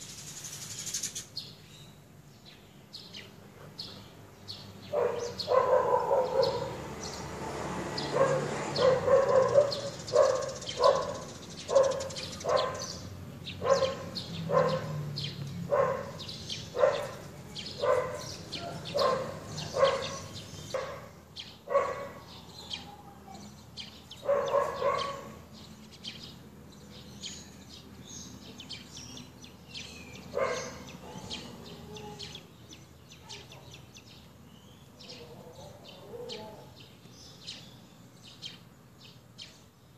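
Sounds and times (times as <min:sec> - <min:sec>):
birds chirping: 0:00.0 - 0:39.9
dog barking: 0:04.9 - 0:06.8, 0:08.1 - 0:13.0, 0:13.6 - 0:15.0, 0:15.7 - 0:23.1, 0:24.2 - 0:25.4, 0:30.3 - 0:31.4, 0:33.2 - 0:33.7.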